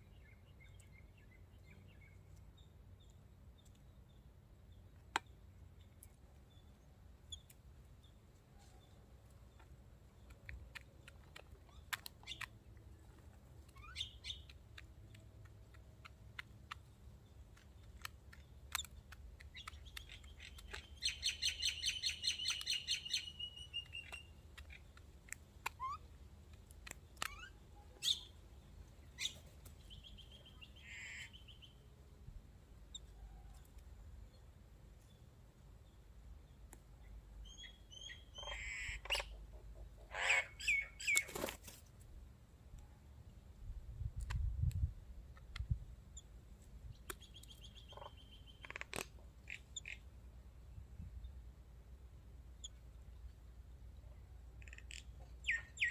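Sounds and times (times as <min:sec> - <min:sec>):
small birds chirping: 0:00.0 - 0:42.0, 0:44.0 - 0:55.9
sharp clicks: 0:09.6 - 0:21.3
bird chirps: 0:13.7 - 0:15.2, 0:16.8 - 0:25.0, 0:26.8 - 0:28.4, 0:29.0 - 0:31.8, 0:37.0 - 0:39.4, 0:40.0 - 0:41.5, 0:46.9 - 0:48.9, 0:54.6 - 0:55.9
bird trill: 0:19.6 - 0:24.4, 0:40.2 - 0:41.3, 0:54.6 - 0:55.9.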